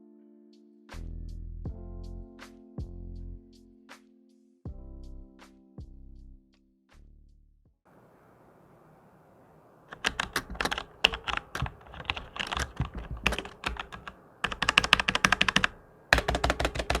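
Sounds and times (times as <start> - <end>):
mechanical keyboard typing: 9.9 - 17.0.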